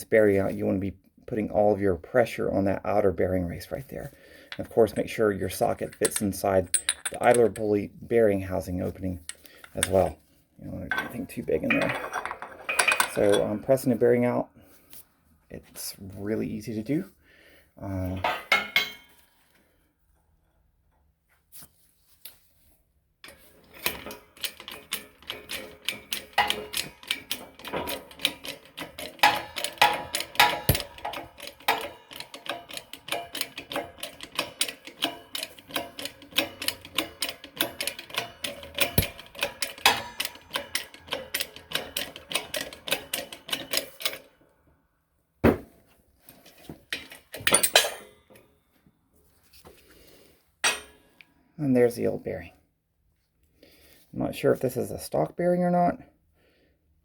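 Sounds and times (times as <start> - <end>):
hydraulic press metallic clicking: 23.8 - 44.3.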